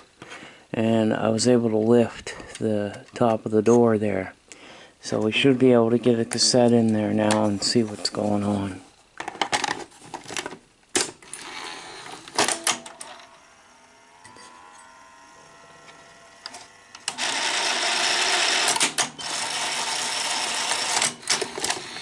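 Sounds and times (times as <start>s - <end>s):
faint mechanical whir: 11.1s - 22.0s
cassette mechanism clicks and clunks: 12.3s - 13.3s.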